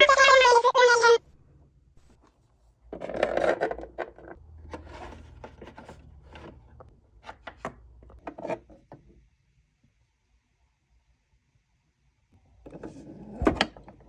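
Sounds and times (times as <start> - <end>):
rubbing and scraping: 2.0 - 7.4.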